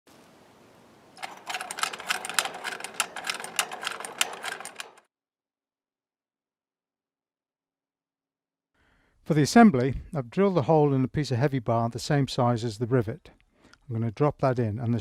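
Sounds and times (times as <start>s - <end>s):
rapid sharp clicks: 1.2s - 5.1s.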